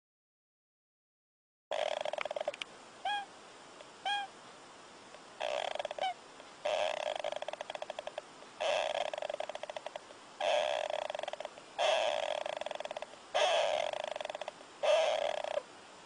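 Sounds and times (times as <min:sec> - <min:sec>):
animal snoring: 0:01.7 - 0:02.6, 0:05.4 - 0:15.7.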